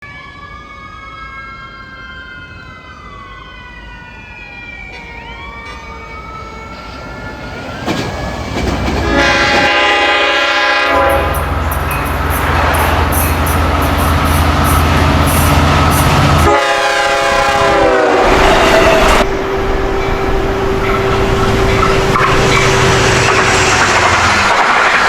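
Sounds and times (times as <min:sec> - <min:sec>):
diesel train approaching: 0:00.1 - 0:25.0
whining tones gliding: 0:04.9 - 0:25.0
train horn: 0:08.9 - 0:24.4.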